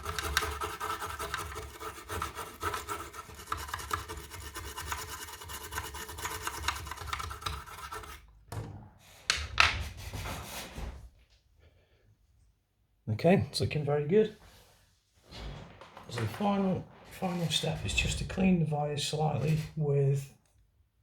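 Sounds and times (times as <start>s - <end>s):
scrubbing a circuit board: 0.0s - 8.2s.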